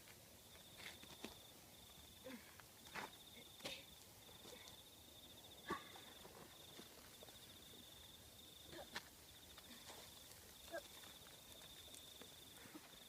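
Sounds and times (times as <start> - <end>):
faint high-pitched insect trill: 0.0 - 13.0.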